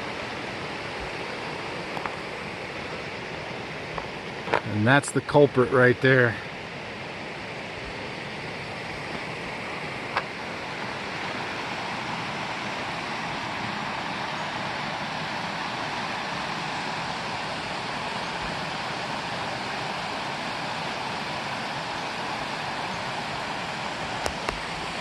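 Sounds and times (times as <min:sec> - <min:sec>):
river water rushing: 0:00.0 - 0:25.0.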